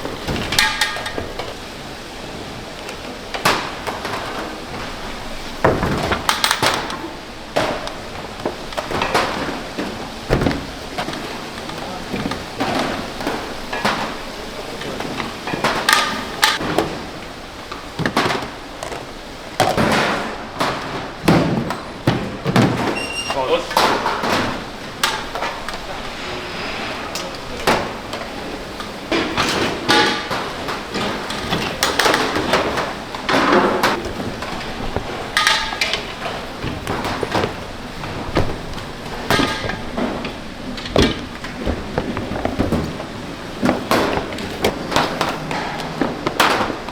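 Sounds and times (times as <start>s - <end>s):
cookware and utensils clattering: 22.4s - 46.9s
kitchenware knocking and banging: 29.1s - 46.9s.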